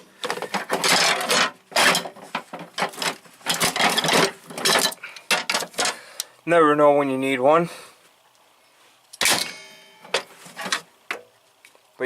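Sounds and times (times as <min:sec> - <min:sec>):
metal tools clattering in drawer: 0:00.3 - 0:06.0.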